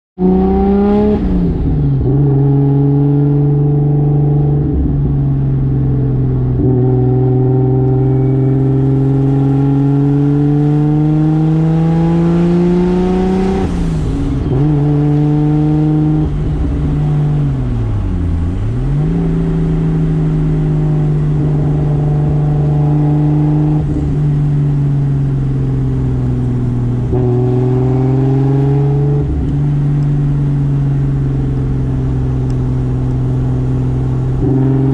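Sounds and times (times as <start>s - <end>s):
car engine accelerating through gears: 0.2s - 34.9s.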